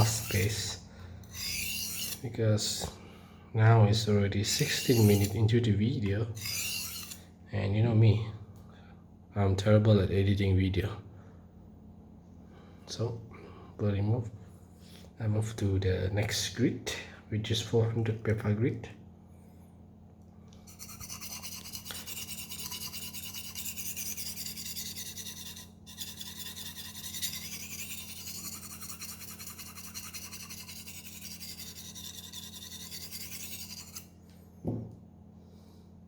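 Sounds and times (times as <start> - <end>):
knife scraping on sharpening stone: 0.0 - 0.7, 1.3 - 2.2, 4.5 - 5.4, 6.4 - 7.2, 20.7 - 34.1
steady low hum: 0.0 - 36.0.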